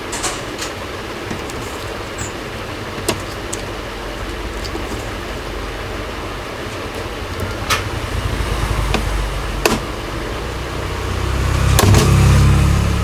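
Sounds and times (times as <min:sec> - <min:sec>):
steady low rumble: 0:03.6 - 0:13.0.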